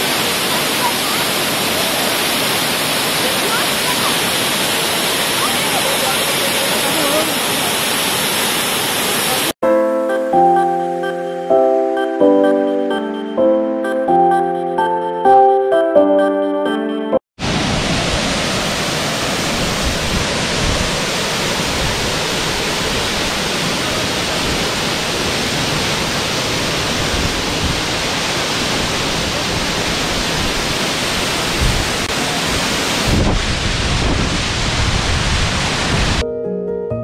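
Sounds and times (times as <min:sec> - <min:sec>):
waterfall rushing: 0:00.0 - 0:09.6, 0:17.4 - 0:36.2
piano phrase: 0:36.2 - 0:37.0.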